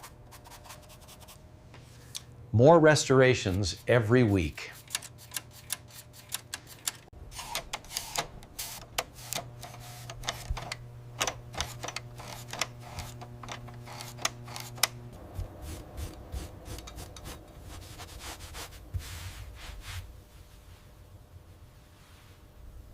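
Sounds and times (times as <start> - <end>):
low steady hum: 0.0 - 22.9
typewriter keys clicking: 4.8 - 15.0.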